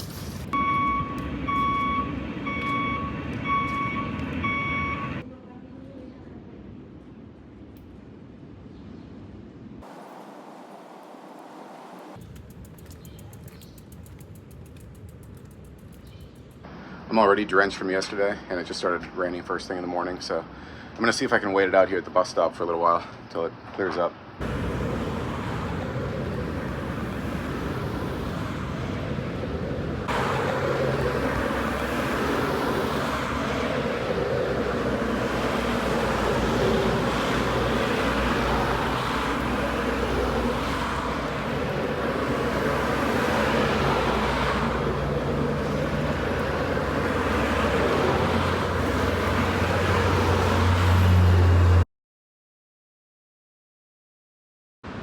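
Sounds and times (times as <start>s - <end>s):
road traffic: 0.0s - 51.9s
engine low hum: 0.2s - 5.2s.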